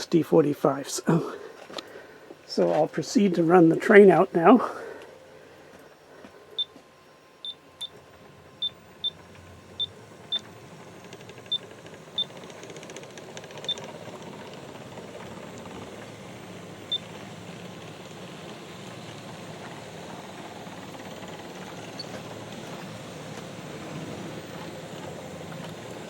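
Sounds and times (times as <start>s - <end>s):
model train running on track: 8.1s - 26.0s.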